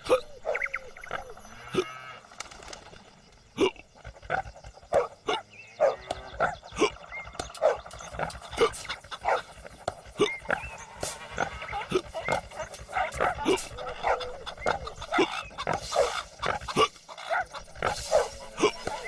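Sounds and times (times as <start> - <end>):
dog barking: 4.9 - 6.6, 7.6 - 7.9, 8.6 - 9.5, 11.7 - 15.3, 17.2 - 19.0.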